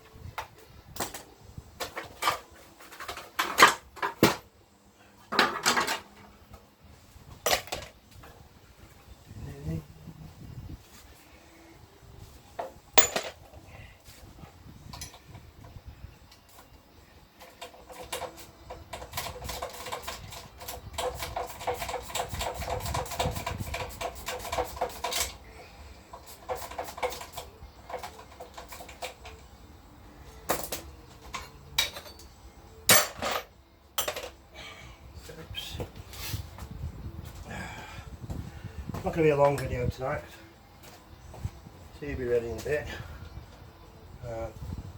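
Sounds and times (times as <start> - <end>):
hand tools clinking on metal: 13.0 - 13.4.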